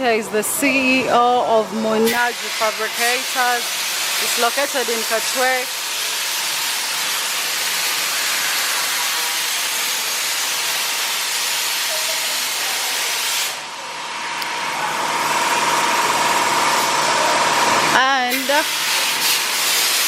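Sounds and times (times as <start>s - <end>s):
loud steady hiss: 2.1s - 13.7s, 14.7s - 20.0s
steady whine: 13.6s - 18.7s.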